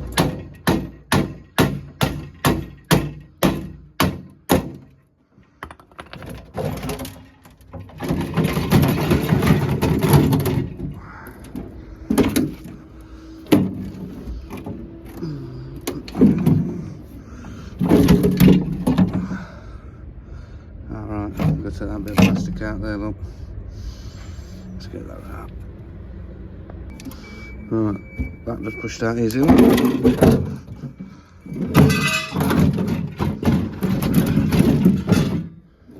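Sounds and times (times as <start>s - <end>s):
metal parts clattering and scraping: 0.0s - 2.9s, 4.7s - 19.6s, 21.3s - 22.7s, 28.2s - 35.9s
sharp taps on metal: 0.0s - 4.9s.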